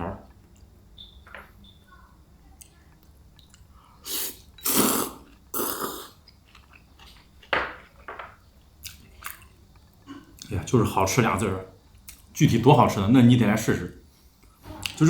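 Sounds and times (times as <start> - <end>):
loud mouth sounds: 4.1 - 6.2
person chewing food: 4.6 - 10.5.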